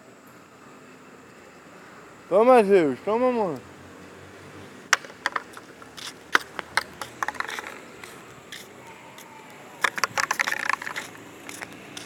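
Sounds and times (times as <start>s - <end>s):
dogs playing with toy clicks: 5.2s - 8.7s, 9.8s - 12.0s.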